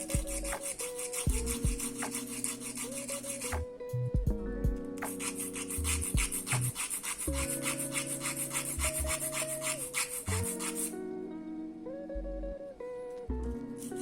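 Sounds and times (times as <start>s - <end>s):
small file rasping on metal pins: 0.0s - 3.6s, 5.0s - 11.0s.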